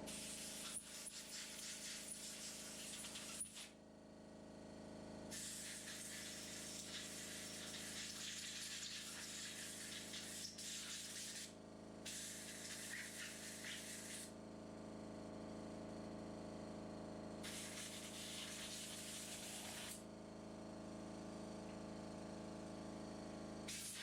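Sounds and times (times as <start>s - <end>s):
compressed air hissing: 17.5s - 20.0s.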